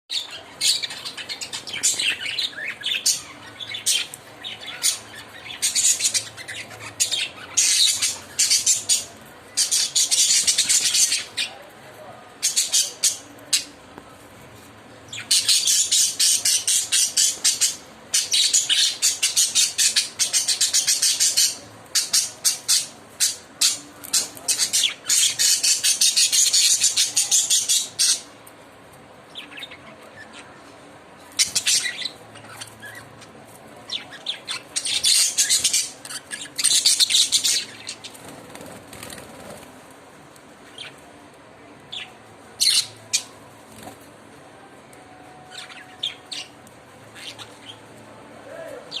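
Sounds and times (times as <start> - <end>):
lovebirds chirping: 0.1 - 11.7, 14.9 - 28.5, 29.2 - 39.6, 45.3 - 48.0.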